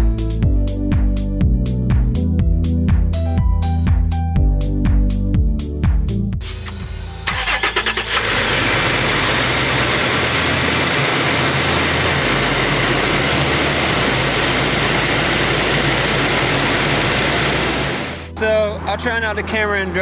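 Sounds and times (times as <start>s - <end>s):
supercharged engine running: 6.4s - 18.3s.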